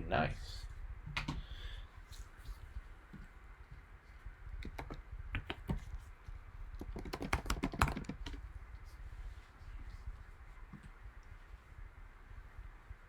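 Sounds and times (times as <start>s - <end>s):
typing on computer keyboard: 4.6s - 5.8s, 6.8s - 8.4s.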